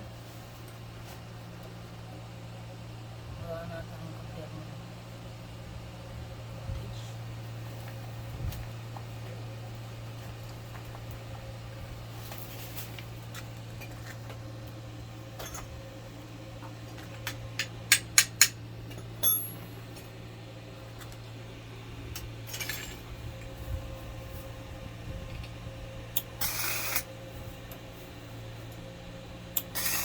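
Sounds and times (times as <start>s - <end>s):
sharp metallic clinks: 19.2s - 19.7s
welding machine humming: 26.0s - 30.0s.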